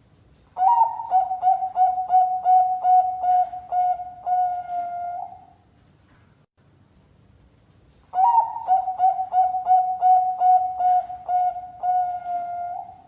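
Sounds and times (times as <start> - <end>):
dove cooing: 0.6 - 5.6, 8.2 - 13.0.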